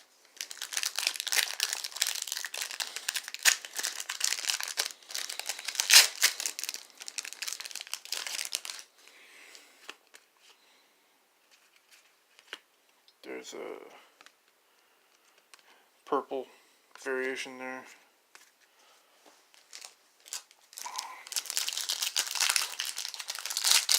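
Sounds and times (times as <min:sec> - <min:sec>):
plastic wrapping crinkling: 0:00.0 - 0:09.1, 0:19.5 - 0:23.9
plastic ripping: 0:00.4 - 0:08.9, 0:19.6 - 0:23.9.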